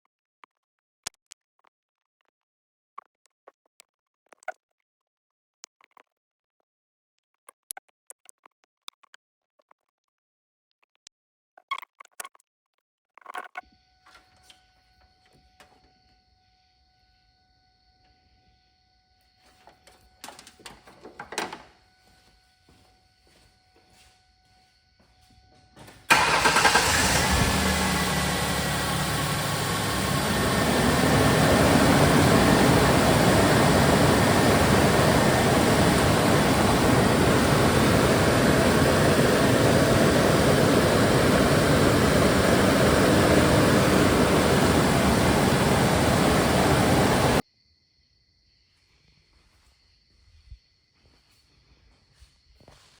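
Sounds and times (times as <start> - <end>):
car engine starting and idling: 25.8 - 47.4.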